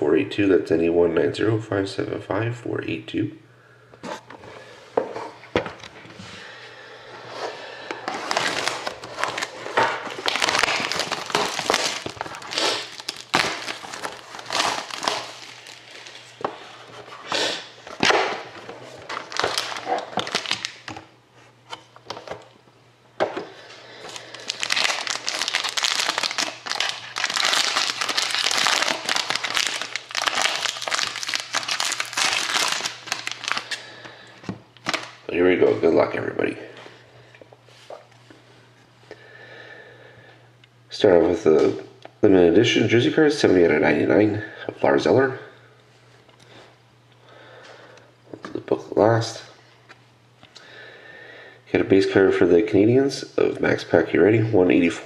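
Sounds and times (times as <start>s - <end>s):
plastic wrapping crinkling: 7.8s - 21.0s, 24.0s - 34.0s, 34.8s - 35.2s.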